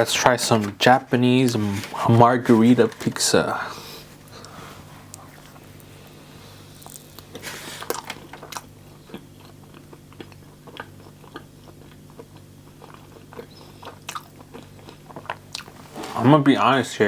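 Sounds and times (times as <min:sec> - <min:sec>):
chewing: 0:04.3 - 0:16.2.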